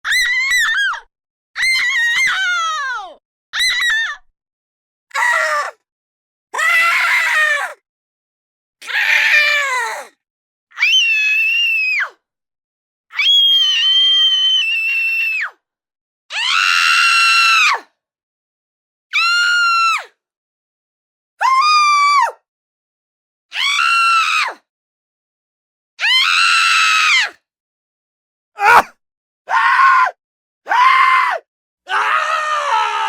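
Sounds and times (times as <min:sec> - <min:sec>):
high-pitched screams: 0:28.6 - 0:28.9.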